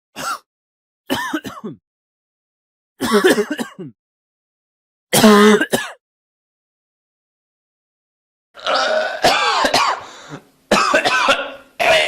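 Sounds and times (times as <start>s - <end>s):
person coughing: 0.2s - 0.5s, 1.1s - 1.8s, 3.0s - 4.0s, 5.1s - 6.0s, 8.9s - 12.0s.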